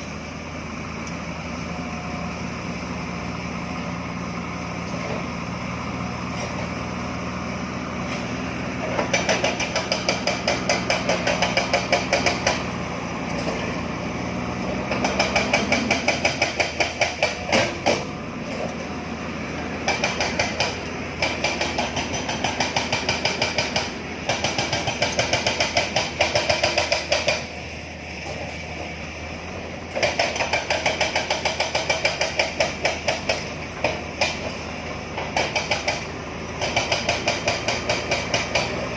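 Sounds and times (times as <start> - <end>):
diesel engine running: 0.0 - 38.9
hydraulic breaker pounding rock: 8.1 - 18.8, 19.6 - 27.6, 29.6 - 38.9.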